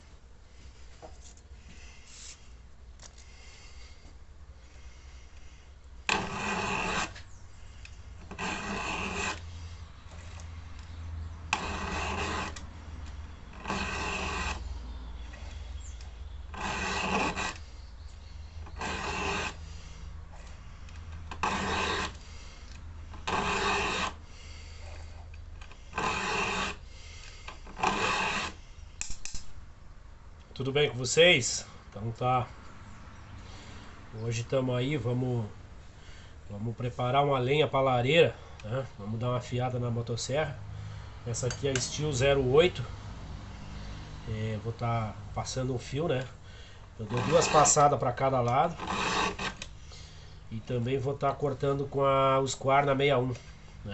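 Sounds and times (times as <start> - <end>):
file rasping on chainsaw chain: 6.1 - 7.2, 8.2 - 9.6, 11.5 - 12.7, 13.4 - 14.7, 16.5 - 17.7, 18.6 - 19.7, 21.3 - 22.5, 23.1 - 24.2, 25.6 - 28.6, 47.0 - 49.7.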